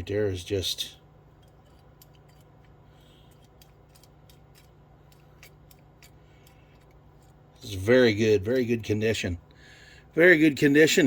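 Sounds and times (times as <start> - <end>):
low steady hum: 0.0 - 11.0
small metal parts clicking: 1.4 - 7.4.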